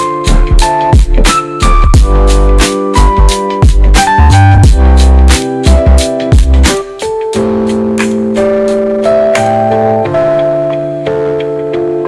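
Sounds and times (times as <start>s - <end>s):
drum beat: 0.3s - 1.3s, 1.9s - 7.2s
deep bass: 0.3s - 6.8s.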